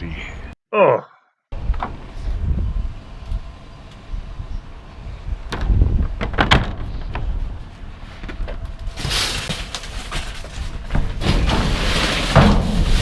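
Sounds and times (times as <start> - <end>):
rustling and scraping: 6.0 - 13.0
knocks and clunks in metal dumpster: 10.1 - 13.0.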